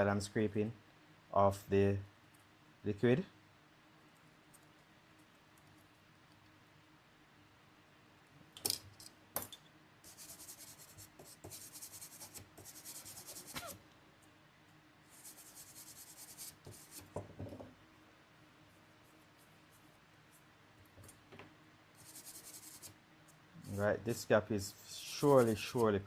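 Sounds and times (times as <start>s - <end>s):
tool scratching circuit board: 10.1s - 13.7s, 22.0s - 23.0s, 25.0s - 25.9s.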